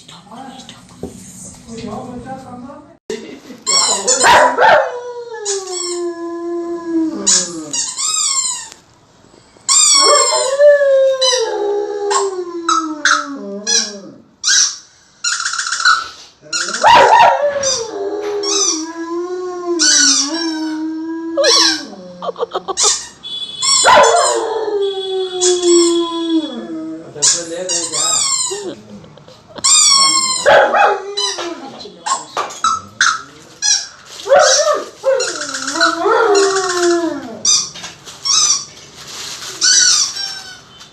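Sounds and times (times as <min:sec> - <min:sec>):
squeaky toy squeaks: 0:03.6 - 0:04.3, 0:07.3 - 0:08.8, 0:09.7 - 0:10.5, 0:13.7 - 0:18.8, 0:19.8 - 0:20.8, 0:21.4 - 0:24.4, 0:27.2 - 0:28.7, 0:29.6 - 0:30.6, 0:31.2 - 0:34.6, 0:35.2 - 0:36.8, 0:37.4 - 0:38.8, 0:39.5 - 0:40.8
dog howling: 0:03.8 - 0:07.8, 0:10.0 - 0:14.2, 0:16.8 - 0:22.5, 0:23.8 - 0:28.2, 0:30.0 - 0:31.8, 0:34.3 - 0:37.6.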